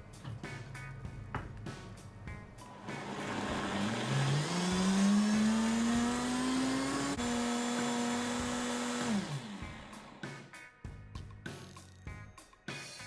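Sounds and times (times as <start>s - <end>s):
blender motor running: 2.6s - 10.2s
blender click: 2.9s - 10.2s.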